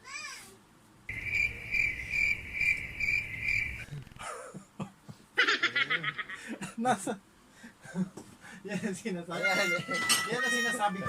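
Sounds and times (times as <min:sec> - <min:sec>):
crickets chirping: 0:01.1 - 0:03.9.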